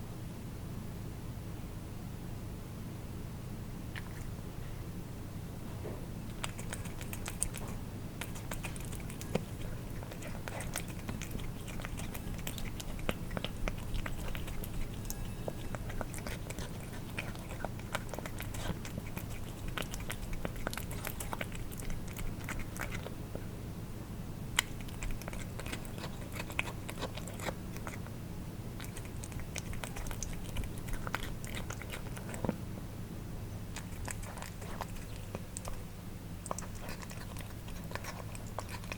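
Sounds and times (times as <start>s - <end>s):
cats chewing wet food: 3.9s - 4.8s, 6.2s - 23.3s, 24.5s - 32.8s, 33.6s - 38.9s
tongue lapping clicks: 6.3s - 23.2s, 24.6s - 28.2s, 28.8s - 32.6s, 33.7s - 38.9s.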